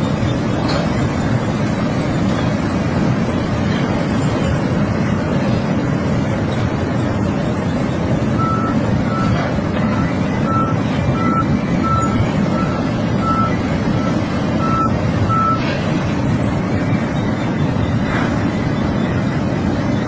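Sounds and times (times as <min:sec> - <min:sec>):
heavy machinery engine running: 0:00.0 - 0:20.0
reversing alarm beeping: 0:08.2 - 0:15.6.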